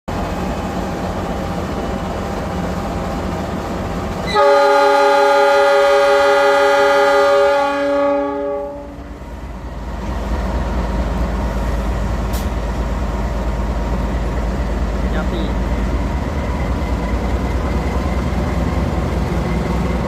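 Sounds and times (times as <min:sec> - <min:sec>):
train rumbling: 0:00.1 - 0:20.0
train horn chord: 0:04.2 - 0:09.1.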